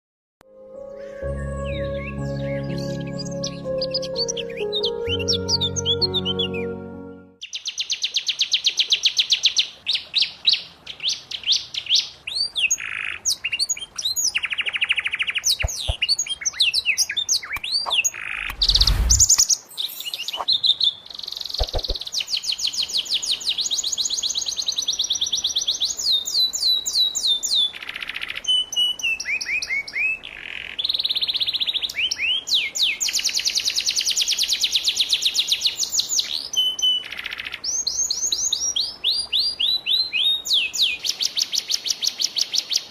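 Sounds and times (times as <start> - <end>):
canary singing: 0.8 - 8.0.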